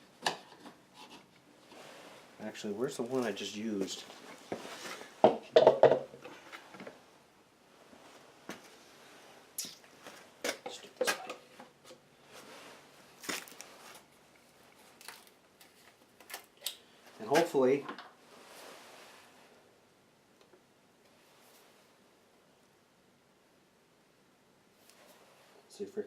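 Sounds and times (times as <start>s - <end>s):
objects being handled: 0.0s - 2.3s, 9.6s - 19.0s
knocks: 5.2s - 6.1s.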